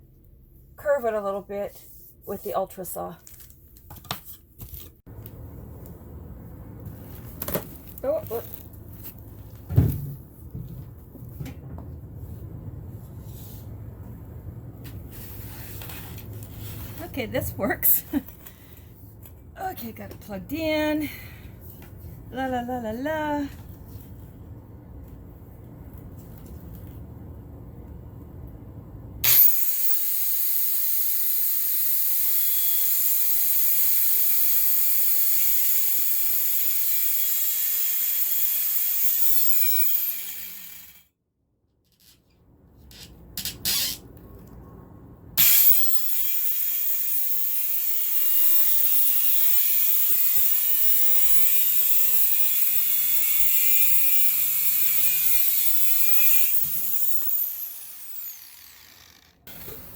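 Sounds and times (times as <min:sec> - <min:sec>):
power saw cutting floor plank: 0:29.2 - 0:41.0, 0:45.4 - 0:59.9.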